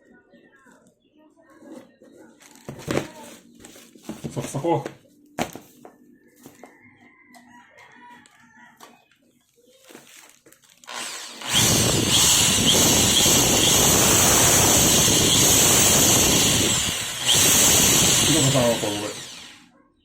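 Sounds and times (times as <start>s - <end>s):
faint handling sounds: 0.6s - 7.5s, 8.1s - 10.9s
power tool whirring whine: 10.8s - 19.7s.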